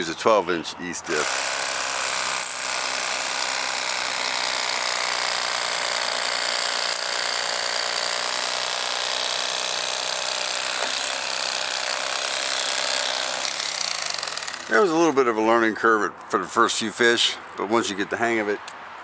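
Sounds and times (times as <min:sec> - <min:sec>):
electric fillet knife running: 0:01.1 - 0:14.9.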